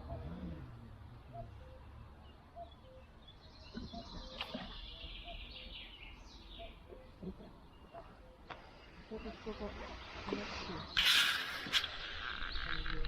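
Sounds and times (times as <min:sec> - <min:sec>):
songbird trilling: 0:01.3 - 0:08.5.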